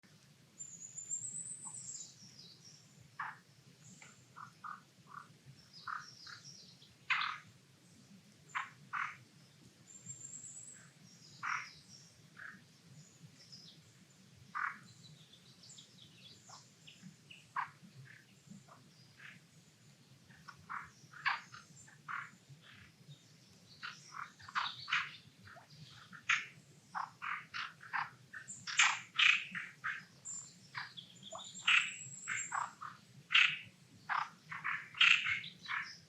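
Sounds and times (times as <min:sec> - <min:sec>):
small birds chirping: 0:00.0 - 0:36.0
frogs croaking: 0:03.2 - 0:06.5, 0:07.1 - 0:07.5, 0:08.5 - 0:09.3, 0:10.8 - 0:11.8, 0:12.4 - 0:12.6, 0:14.5 - 0:14.9, 0:16.5 - 0:19.4, 0:20.3 - 0:23.0, 0:23.8 - 0:36.0.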